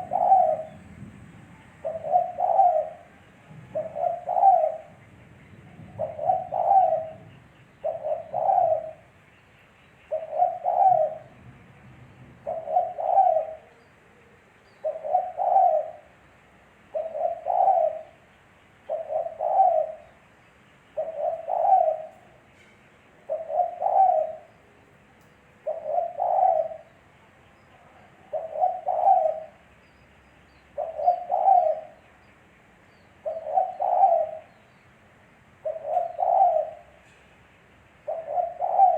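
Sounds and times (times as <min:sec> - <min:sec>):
dove cooing: 0:00.0 - 0:01.1, 0:01.8 - 0:09.2, 0:10.1 - 0:11.4, 0:12.4 - 0:20.2, 0:20.9 - 0:22.6, 0:23.2 - 0:27.1, 0:27.8 - 0:29.7, 0:30.8 - 0:32.0, 0:33.2 - 0:34.6, 0:35.6 - 0:37.1, 0:38.0 - 0:38.9.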